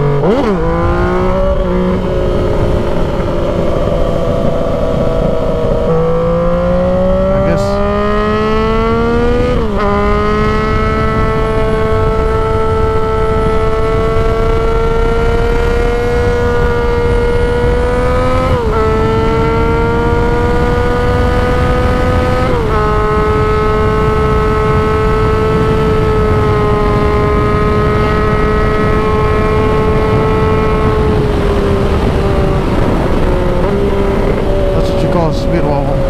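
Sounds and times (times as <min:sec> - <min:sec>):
motorcycle engine accelerating: 0:00.0 - 0:36.0
wind noise: 0:00.0 - 0:36.0.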